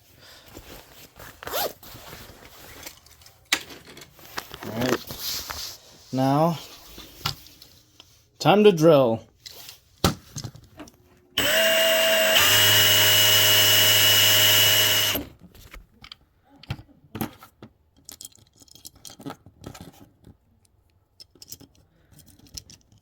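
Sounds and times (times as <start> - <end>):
power drill running: 11.4 - 15.3.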